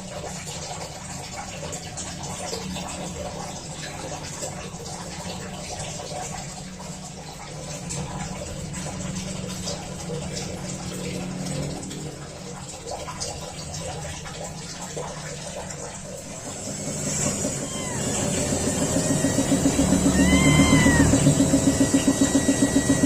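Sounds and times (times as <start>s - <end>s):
kitten mewing: 17.4s - 18.9s, 19.5s - 21.8s.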